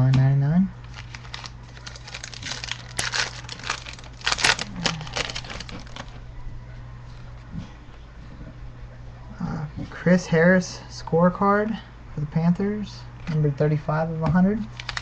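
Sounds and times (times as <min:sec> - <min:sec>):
wrapper and cards crinkling: 0:00.8 - 0:06.2, 0:14.7 - 0:15.0.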